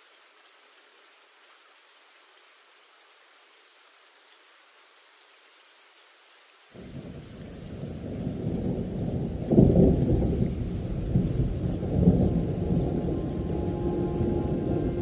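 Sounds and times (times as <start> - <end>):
steady rain: 0.0 - 15.0
thunder rumbling: 7.0 - 15.0.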